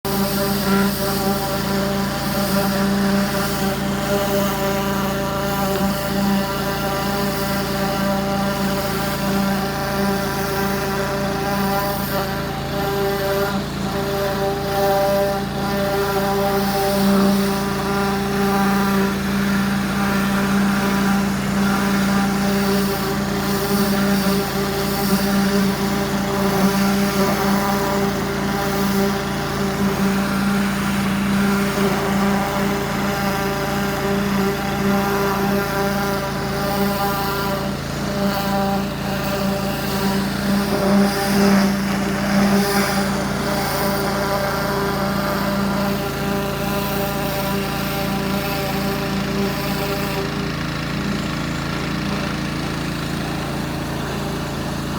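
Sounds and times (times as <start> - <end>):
pressure washer motor hum: 0.0 - 54.9
high-pressure water jet hissing: 0.1 - 54.9.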